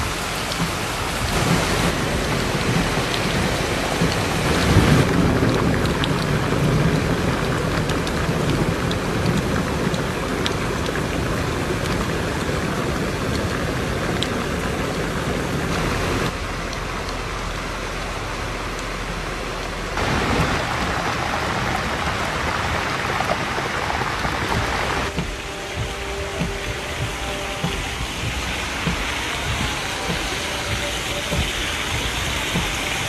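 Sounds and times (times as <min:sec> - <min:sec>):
rain falling: 0:00.0 - 0:33.0
raindrop ticks: 0:00.0 - 0:33.0.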